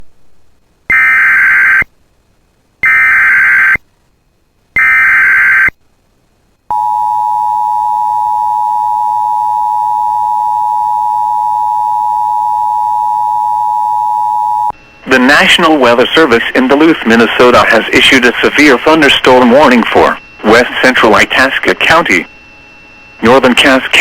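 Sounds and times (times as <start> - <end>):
buzzing digital data tone: 0.9 - 1.9, 2.8 - 3.8, 4.8 - 5.8.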